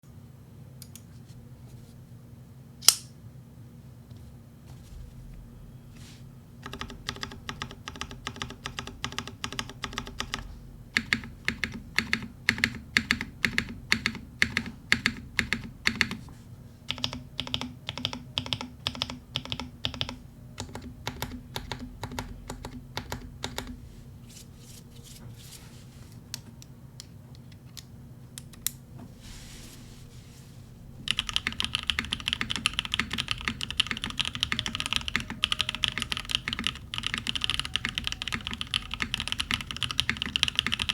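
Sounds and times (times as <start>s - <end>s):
typing on mechanical keyboard: 6.6s - 16.2s, 16.9s - 23.8s, 31.1s - 40.9s.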